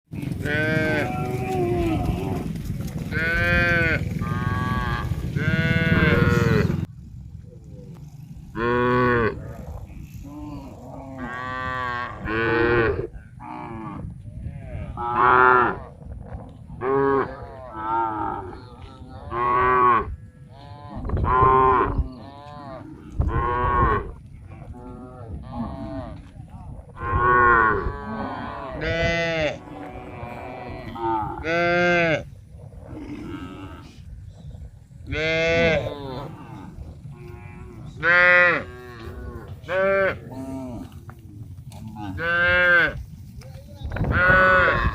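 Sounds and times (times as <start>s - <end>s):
cattle mooing: 0.1s - 6.9s, 8.4s - 16.0s, 16.8s - 26.3s, 27.0s - 34.1s, 35.1s - 43.0s
low rumble: 0.2s - 12.3s.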